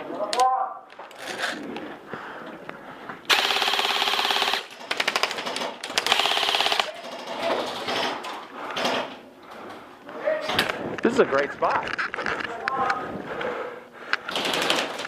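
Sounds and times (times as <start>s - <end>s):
airsoft guns firing full auto: 3.3s - 8.1s, 14.3s - 15.0s.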